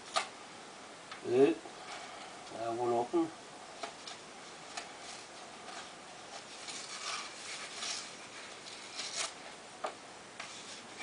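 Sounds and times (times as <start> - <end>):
package rustling and scraping: 4.0 - 9.6, 10.4 - 11.0.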